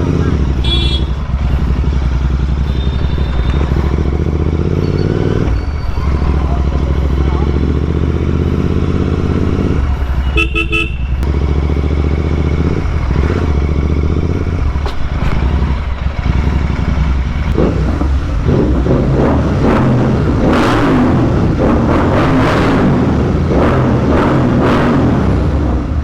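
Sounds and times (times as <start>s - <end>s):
motorcycle engine running: 0.0s - 26.0s
vehicle horn beeps: 0.5s - 1.4s, 2.4s - 4.1s, 10.2s - 11.2s.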